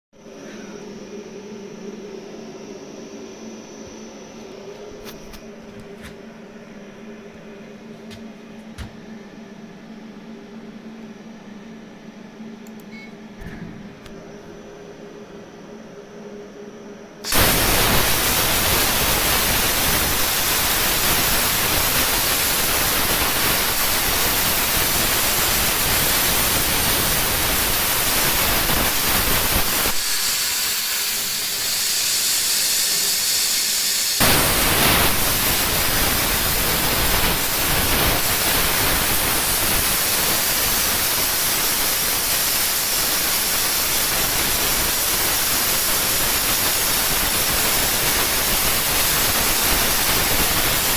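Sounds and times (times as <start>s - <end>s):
plasma cutter hissing: 17.2s - 50.9s.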